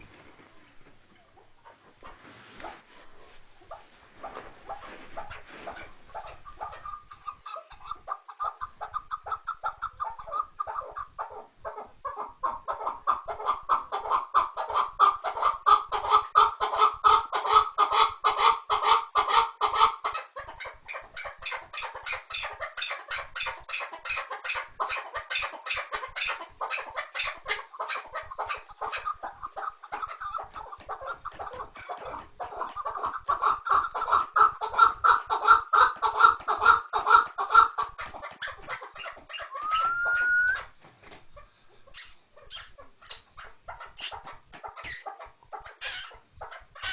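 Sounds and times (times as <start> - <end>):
partridge clucking call: 41.9 - 46.9.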